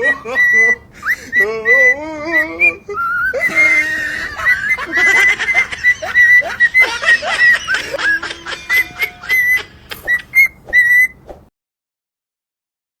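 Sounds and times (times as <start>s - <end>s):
parrot whistling: 0.0s - 11.2s
parrot squeaky calls: 2.4s - 7.8s, 8.7s - 11.2s.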